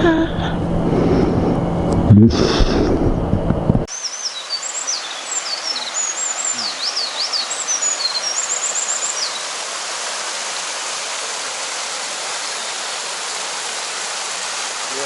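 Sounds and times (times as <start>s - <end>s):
small birds chirping: 3.9s - 15.0s
waterfall rushing: 3.9s - 15.0s.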